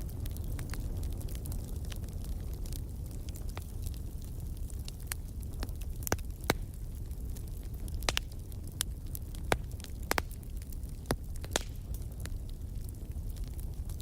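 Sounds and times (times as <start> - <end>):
fire crackling and popping: 0.0 - 14.0
low rumble of flames: 0.0 - 14.0.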